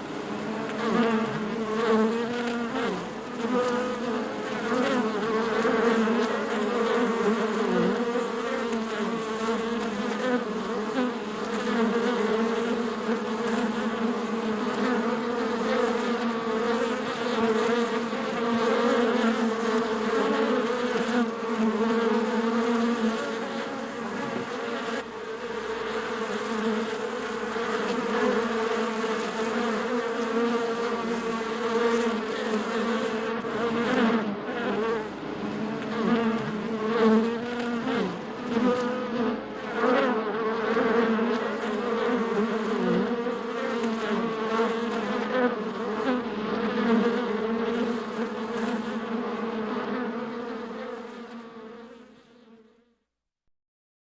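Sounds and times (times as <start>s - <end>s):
bees buzzing: 0.0s - 52.1s.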